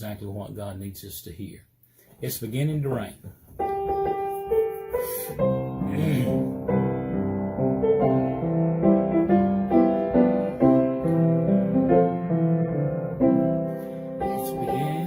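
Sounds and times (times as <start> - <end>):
piano playing slow chords: 3.6 - 15.0.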